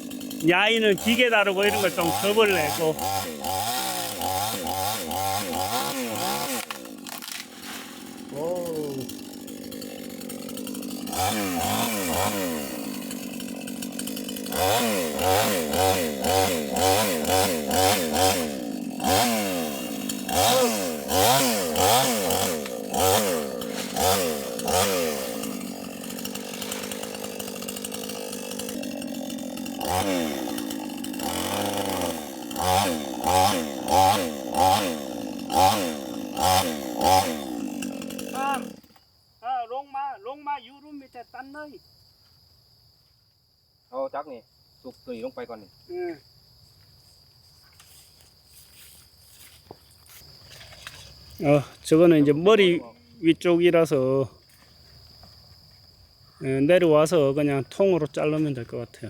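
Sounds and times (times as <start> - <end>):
chainsaw revving and idling: 0.0 - 39.1, 50.8 - 54.6, 56.4 - 59.0.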